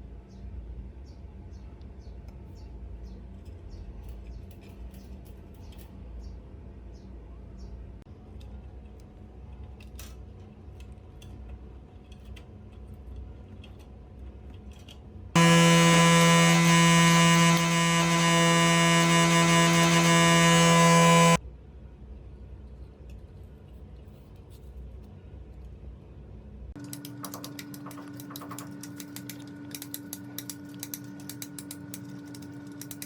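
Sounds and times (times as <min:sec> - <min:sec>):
low electric buzz: 0:15.4 - 0:21.4.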